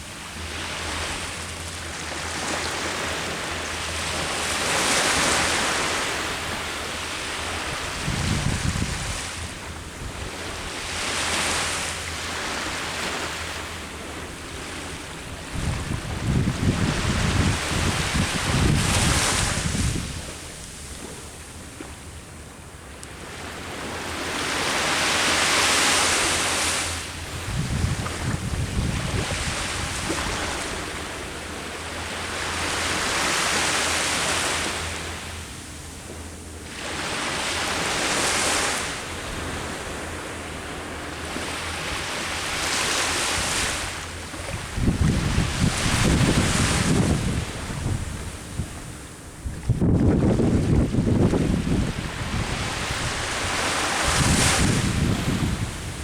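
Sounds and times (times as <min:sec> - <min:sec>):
ocean waves breaking: 0:00.0 - 0:56.0
wind buffeting microphone: 0:07.5 - 0:11.1, 0:15.0 - 0:20.6, 0:27.2 - 0:31.0, 0:43.3 - 0:56.0.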